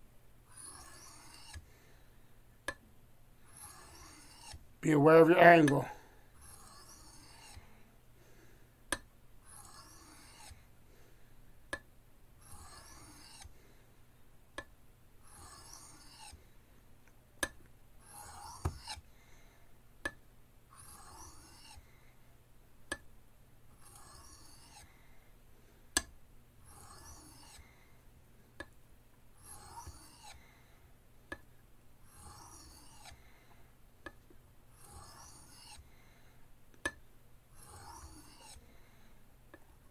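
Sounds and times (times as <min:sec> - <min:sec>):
knife scraping on sharpening stone: 0:00.5 - 0:01.6, 0:03.5 - 0:04.6, 0:06.4 - 0:07.6, 0:09.4 - 0:10.6, 0:12.4 - 0:13.5, 0:15.3 - 0:16.4, 0:18.0 - 0:19.0, 0:20.8 - 0:21.8, 0:23.8 - 0:24.9, 0:26.6 - 0:27.6, 0:29.4 - 0:30.4, 0:32.1 - 0:33.2, 0:34.8 - 0:35.8, 0:37.6 - 0:38.6.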